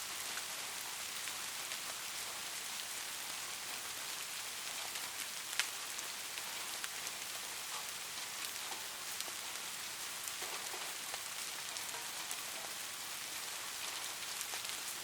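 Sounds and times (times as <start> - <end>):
steady rain falling: 0.0 - 15.0
raindrops ticking: 3.3 - 15.0.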